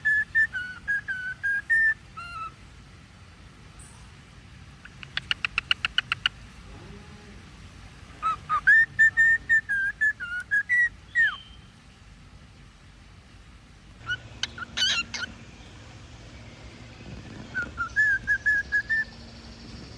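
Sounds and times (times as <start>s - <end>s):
cockatiel whistling and chirping: 0.0s - 2.5s, 4.9s - 6.3s, 8.2s - 11.6s, 14.0s - 15.3s, 17.5s - 19.2s.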